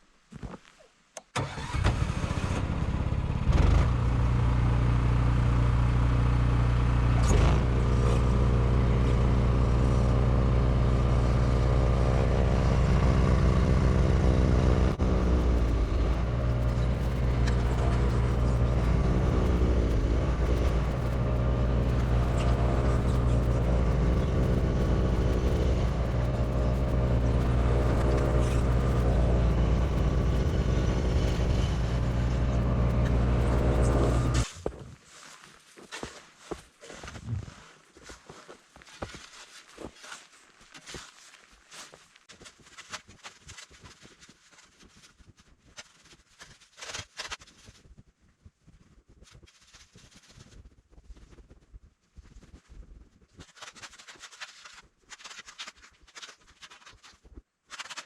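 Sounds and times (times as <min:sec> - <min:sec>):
engine running: 0:01.4 - 0:34.6.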